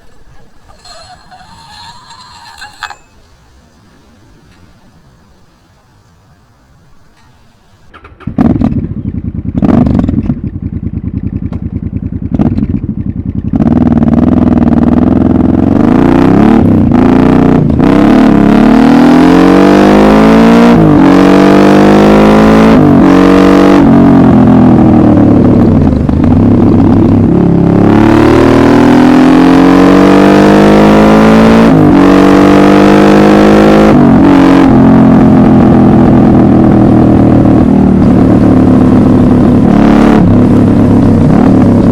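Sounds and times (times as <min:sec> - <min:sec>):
motorcycle engine idling: 0:00.0 - 0:15.7, 0:35.5 - 0:41.9
motorcycle accelerating through gears: 0:00.0 - 0:41.9.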